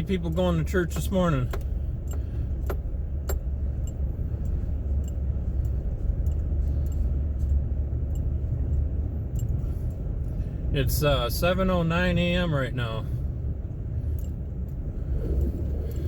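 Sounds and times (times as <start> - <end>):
truck engine low rumble: 0.0 - 16.0
light clicks and rattles: 0.1 - 10.5.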